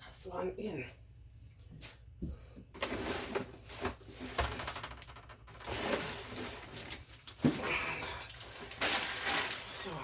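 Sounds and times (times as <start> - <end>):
rustling: 5.5 - 10.0.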